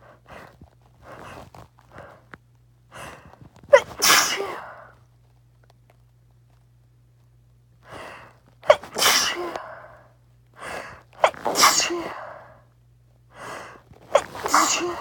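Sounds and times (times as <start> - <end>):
short catching breaths: 2.9 - 3.5, 7.8 - 12.6, 13.3 - 15.0
person sneezing loudly: 3.7 - 4.9, 8.6 - 10.0, 10.6 - 12.5, 14.1 - 15.0.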